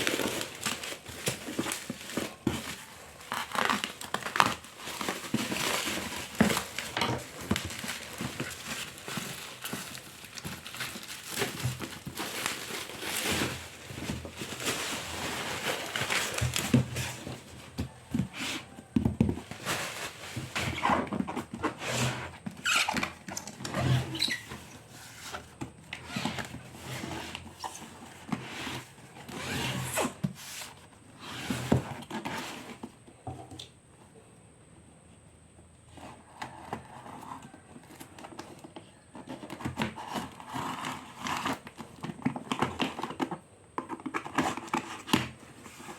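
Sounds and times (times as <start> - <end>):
packaging knocks and scrapes: 0.0 - 33.6
cardboard and plastic rustling: 0.0 - 34.1, 35.8 - 45.9.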